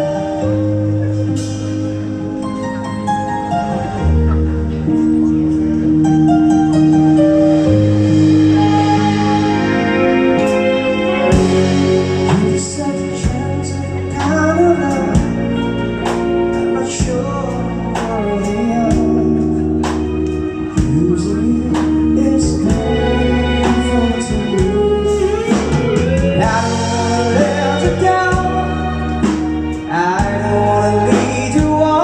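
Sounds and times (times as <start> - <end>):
bass line: 0.0 - 32.0
keyboard chords: 0.0 - 32.0
person singing: 7.6 - 32.0
steady drum beat: 7.7 - 32.0.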